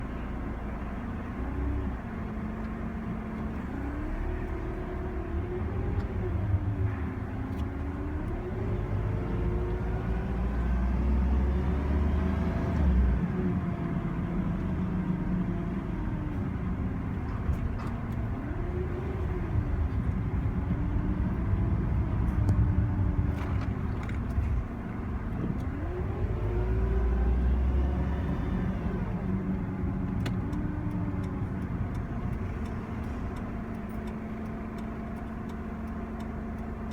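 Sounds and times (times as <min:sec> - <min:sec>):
car engine running: 0:14.0 - 0:36.9.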